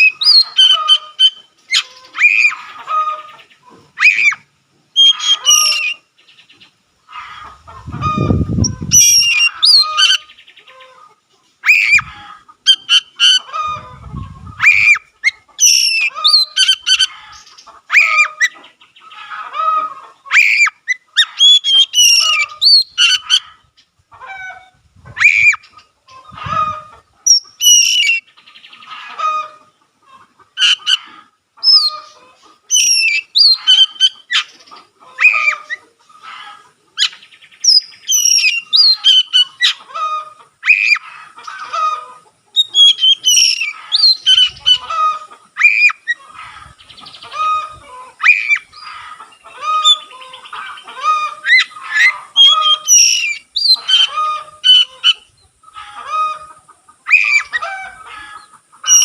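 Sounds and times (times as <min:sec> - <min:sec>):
bird singing whistles and chirps: 0:00.0 - 0:02.6, 0:04.0 - 0:04.4, 0:05.0 - 0:06.0, 0:08.2 - 0:10.2, 0:14.6 - 0:17.1, 0:20.3 - 0:23.2, 0:27.3 - 0:28.3, 0:31.6 - 0:32.0, 0:32.7 - 0:34.5, 0:37.0 - 0:39.8, 0:42.6 - 0:44.8, 0:51.5 - 0:54.1.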